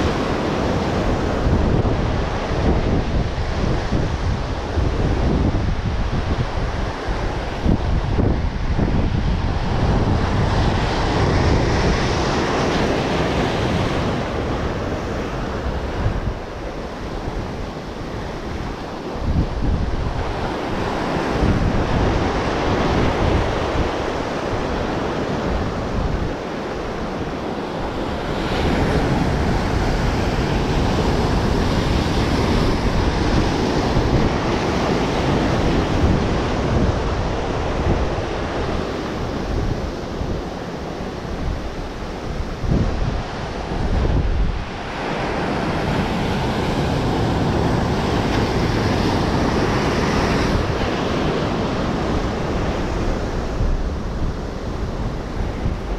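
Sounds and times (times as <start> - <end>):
sea waves breaking on shore: 0.0 - 55.9
wind buffeting microphone: 0.0 - 55.9.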